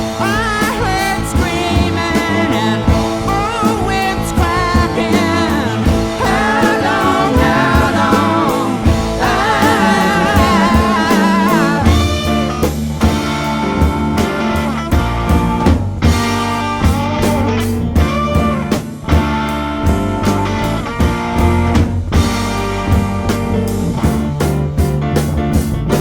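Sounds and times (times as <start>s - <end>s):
bass guitar: 0.0s - 26.0s
drum kit: 0.0s - 26.0s
electric guitar: 0.0s - 26.0s
person singing: 0.2s - 12.7s.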